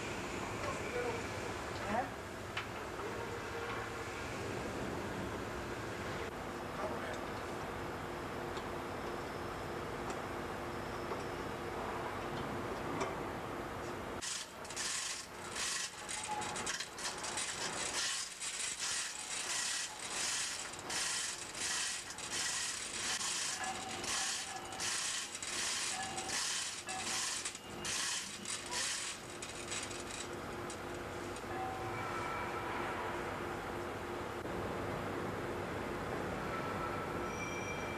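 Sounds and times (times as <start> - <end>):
ratchet clicking: 14.2 - 30.3.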